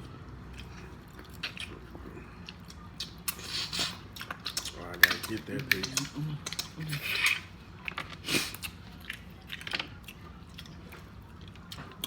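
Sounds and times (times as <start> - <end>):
person chewing seafood: 0.0 - 12.0.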